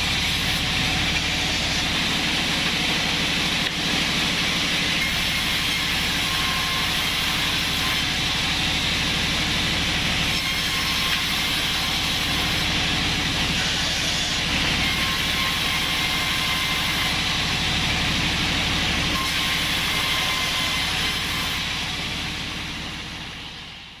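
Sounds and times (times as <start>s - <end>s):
band sawmill running: 0.0s - 24.0s.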